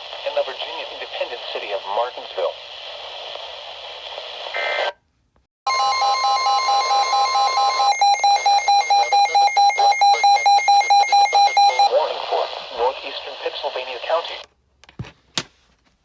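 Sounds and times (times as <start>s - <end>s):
radio static: 0.0s - 4.9s, 8.2s - 14.5s.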